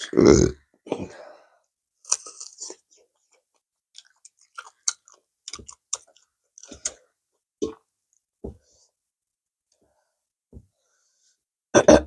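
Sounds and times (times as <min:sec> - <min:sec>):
mouth chewing food: 0:02.0 - 0:07.8.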